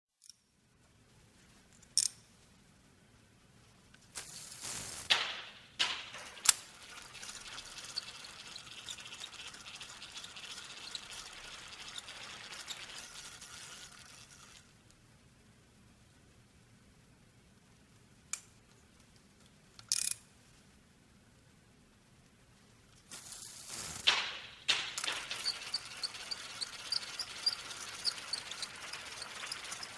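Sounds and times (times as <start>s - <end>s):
burst of noise: 4.2s - 6.5s, 23.1s - 26.0s
fishing reel clicks: 6.4s - 14.5s, 25.0s - 29.9s
fishing reel running: 6.6s - 14.6s, 25.0s - 29.9s.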